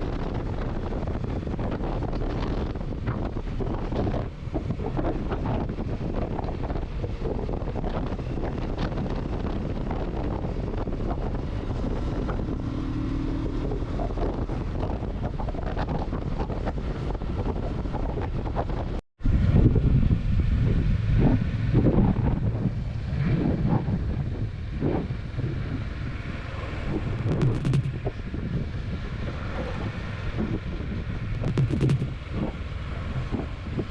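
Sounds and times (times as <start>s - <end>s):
wind buffeting microphone: 0.0s - 33.9s
motorcycle engine running: 26.8s - 28.2s, 31.3s - 32.4s.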